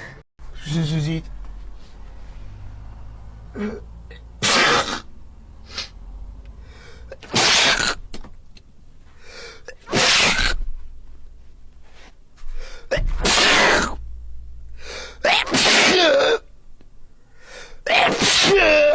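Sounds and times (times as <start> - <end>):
person sneezing: 4.4 - 5.0, 7.1 - 8.0, 9.4 - 10.6, 12.6 - 14.0, 14.8 - 16.4, 17.5 - 18.9
sharp intake of breath: 5.6 - 7.2, 14.7 - 15.2, 17.3 - 17.8.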